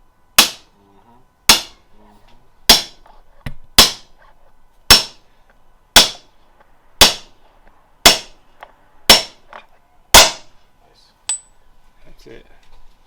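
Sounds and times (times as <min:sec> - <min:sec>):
hammer striking metal: 0:00.4 - 0:00.7, 0:01.5 - 0:01.8, 0:02.7 - 0:03.0, 0:03.8 - 0:04.1, 0:04.9 - 0:05.2, 0:06.0 - 0:06.3, 0:07.0 - 0:07.4, 0:08.0 - 0:08.4, 0:09.1 - 0:09.5, 0:10.1 - 0:10.6, 0:11.3 - 0:11.6.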